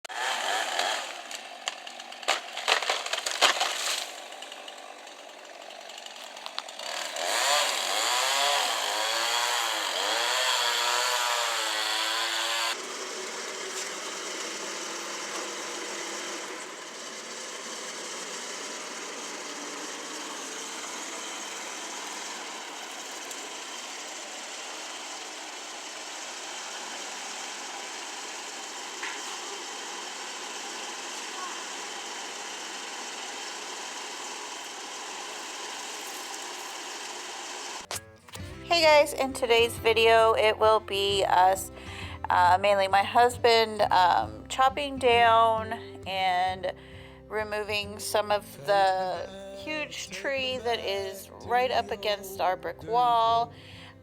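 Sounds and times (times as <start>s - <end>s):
chainsaw revving: 0.0s - 40.3s
wood cracking: 0.1s - 12.7s
engine running steadily: 0.2s - 54.0s.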